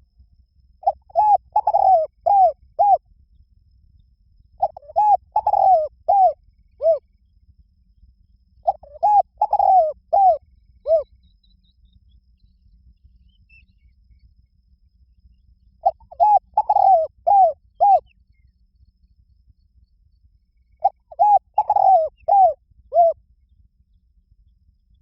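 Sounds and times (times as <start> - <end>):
dove cooing: 0.8 - 3.0, 4.6 - 7.0, 8.6 - 11.1, 15.8 - 18.1, 20.8 - 23.2.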